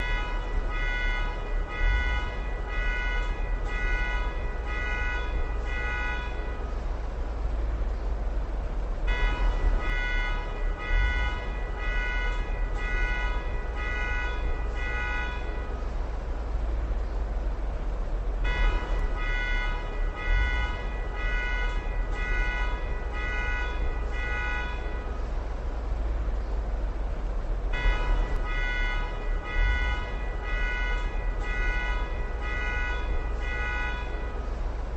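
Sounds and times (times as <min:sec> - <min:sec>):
car alarm horn honking: 0:00.0 - 0:06.8, 0:09.0 - 0:15.9, 0:18.3 - 0:25.3, 0:27.7 - 0:34.9
low street rumble: 0:00.0 - 0:34.9.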